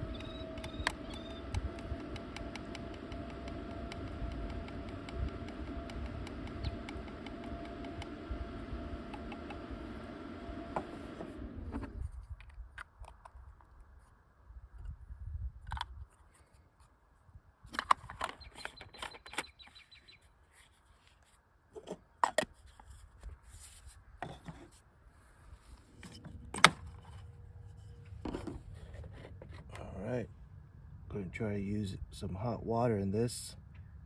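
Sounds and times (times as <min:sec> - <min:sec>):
low hum: 0:00.0 - 0:15.8, 0:23.8 - 0:34.0
espresso maker being handled: 0:28.0 - 0:29.8.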